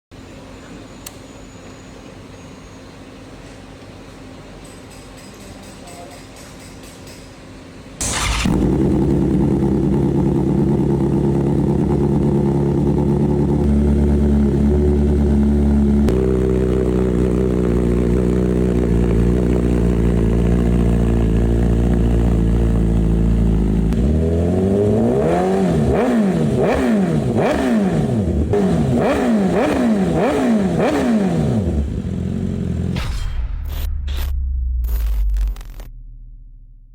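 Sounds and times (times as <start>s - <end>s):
motorcycle engine idling: 8.0s - 24.4s, 31.6s - 33.0s
motorcycle throttle blips: 8.0s - 33.0s.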